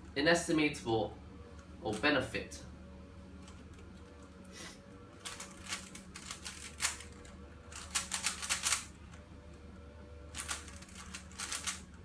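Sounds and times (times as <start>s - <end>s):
faint steady hum: 0.0s - 12.0s
plastic puzzle clicking: 5.2s - 9.2s, 10.4s - 12.0s.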